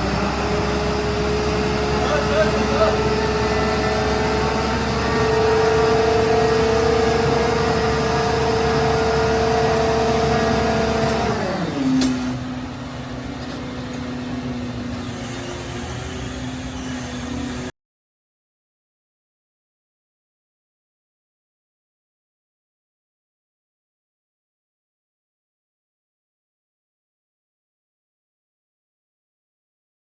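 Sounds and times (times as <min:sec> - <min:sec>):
heavy machine engine running: 0:00.0 - 0:17.7.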